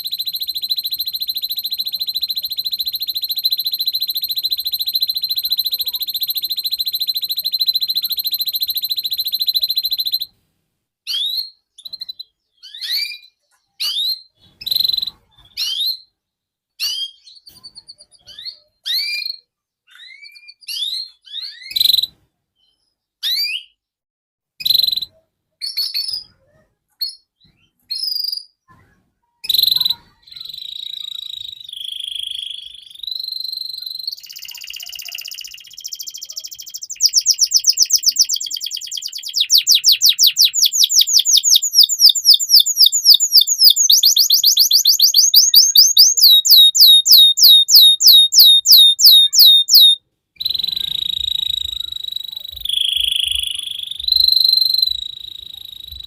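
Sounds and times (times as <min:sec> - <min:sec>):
canary trilling: 0:00.0 - 0:10.3, 0:29.5 - 0:56.0
canary whistled notes: 0:37.0 - 0:56.0.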